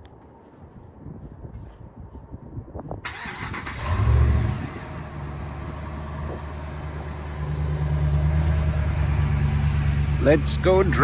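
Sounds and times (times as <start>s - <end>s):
engine starting and idling: 3.0s - 11.0s.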